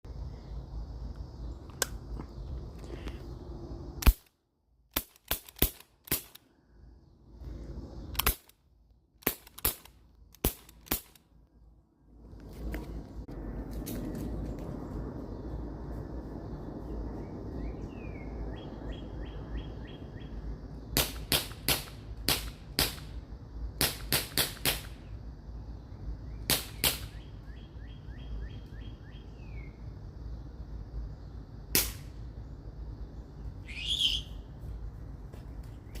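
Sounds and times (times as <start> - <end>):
bb gun cracks: 4.0 - 6.4, 8.1 - 8.6, 9.2 - 11.3, 21.0 - 23.2, 23.8 - 25.0, 26.5 - 27.2, 31.7 - 32.2
small bird chirping: 27.1 - 29.9, 32.4 - 34.5.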